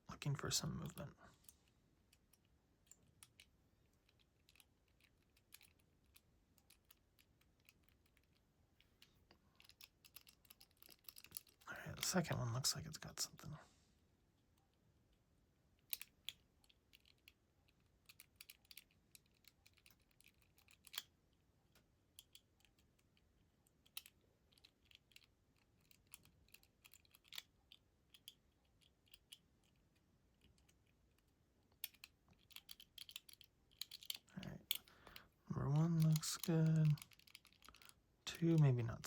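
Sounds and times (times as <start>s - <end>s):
padlock wheels clicking: 9.6s - 11.6s, 15.9s - 21.1s, 22.2s - 29.8s, 31.7s - 38.6s.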